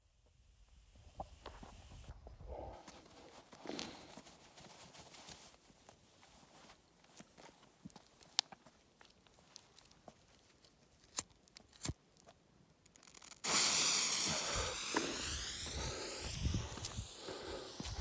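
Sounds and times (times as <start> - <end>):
firework hissing: 13.4 - 18.0.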